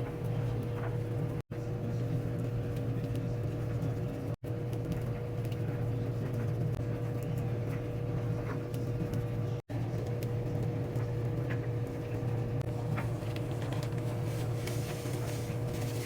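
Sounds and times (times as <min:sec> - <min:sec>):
mechanical hum with high whine: 0:00.0 - 0:16.0.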